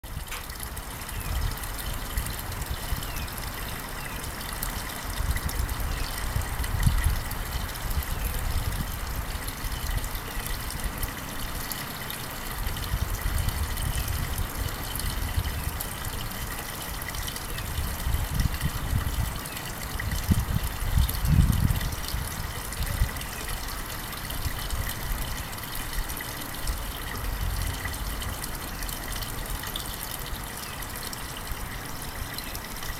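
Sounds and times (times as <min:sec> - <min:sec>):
wind gusting against microphone: 0:05.2 - 0:09.4, 0:17.7 - 0:19.4, 0:20.0 - 0:23.2.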